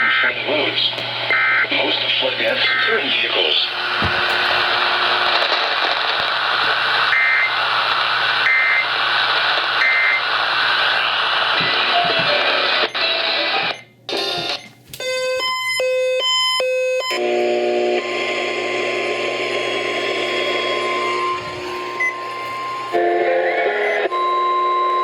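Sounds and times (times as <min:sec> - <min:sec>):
radio static hiss: 0:00.0 - 0:13.8, 0:18.0 - 0:24.2
electronic beeps: 0:20.8 - 0:24.9.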